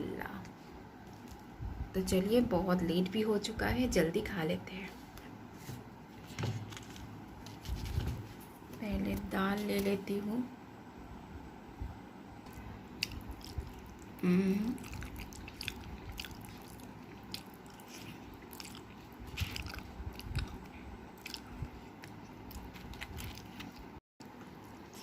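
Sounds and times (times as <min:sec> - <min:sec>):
person chewing food: 0:12.4 - 0:14.2, 0:14.8 - 0:24.0.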